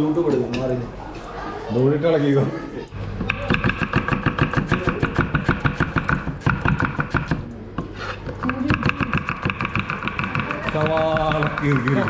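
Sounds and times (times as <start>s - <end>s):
machine running with fast beat: 8.5s - 12.0s.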